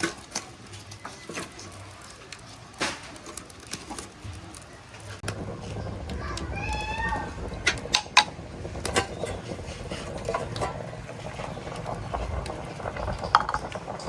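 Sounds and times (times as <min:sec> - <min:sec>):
steady low background noise: 0:02.6 - 0:14.0.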